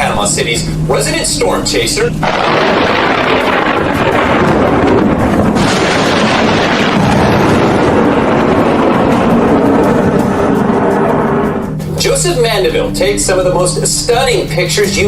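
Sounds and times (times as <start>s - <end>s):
storm wind and rain on microphone: 1.1s - 12.6s.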